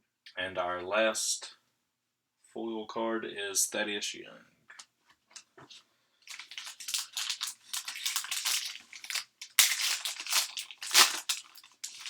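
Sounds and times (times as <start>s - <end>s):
foil wrapper crinkling and tearing: 6.3s - 12.0s.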